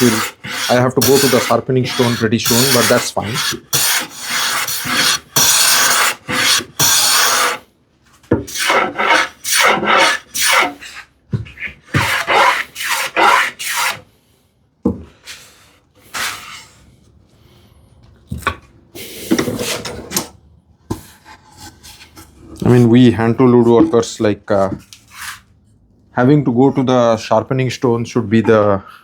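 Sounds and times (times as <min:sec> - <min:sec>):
hand plane rasping on wood: 0:00.0 - 0:07.6, 0:08.5 - 0:11.0, 0:11.9 - 0:14.0.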